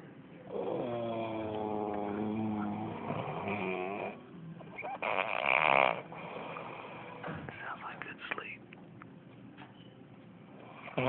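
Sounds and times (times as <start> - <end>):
man snoring: 0.5 - 4.2, 5.0 - 7.1, 10.6 - 11.0.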